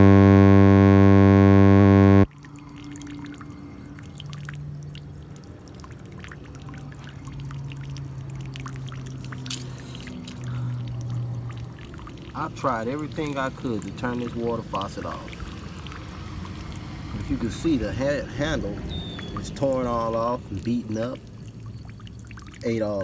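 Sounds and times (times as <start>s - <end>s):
loud held musical note: 0.0s - 2.3s
water pouring from faucet: 2.3s - 23.0s
water spatters: 2.3s - 23.0s.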